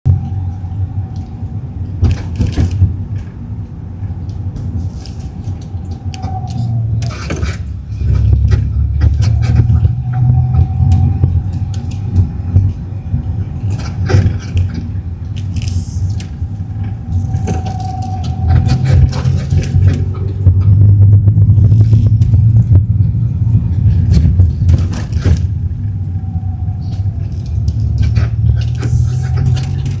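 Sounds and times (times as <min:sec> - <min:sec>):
car engine rumble: 0:00.0 - 0:30.0.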